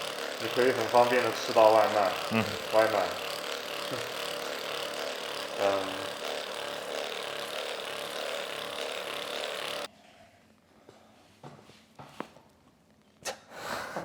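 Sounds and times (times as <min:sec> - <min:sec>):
small motor humming: 0:00.0 - 0:09.9.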